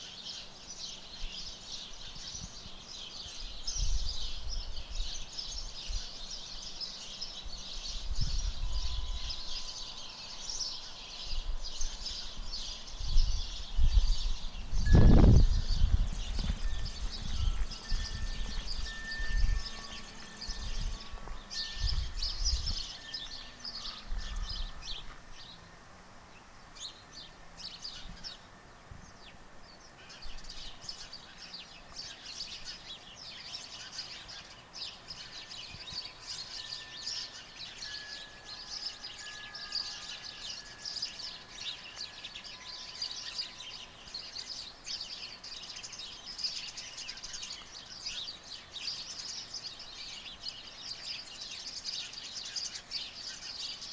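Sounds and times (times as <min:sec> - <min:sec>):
small birds chirping: 0:00.0 - 0:53.9.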